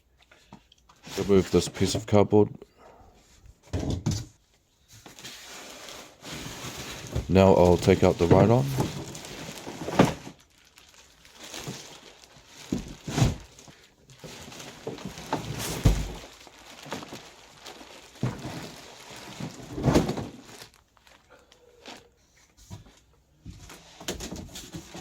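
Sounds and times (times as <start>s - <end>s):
cardboard and plastic wrap rustling: 0.4s - 2.3s, 3.2s - 25.0s.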